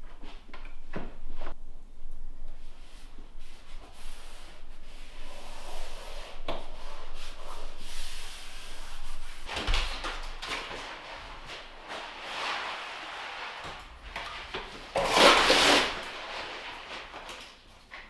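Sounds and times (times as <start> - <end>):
floor plank scraping: 9.5 - 17.4.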